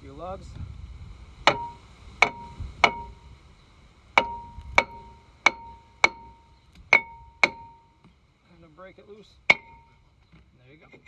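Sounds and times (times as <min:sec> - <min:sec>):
hammer striking metal with ring: 0:01.5 - 0:03.2, 0:04.2 - 0:08.0, 0:09.5 - 0:10.0.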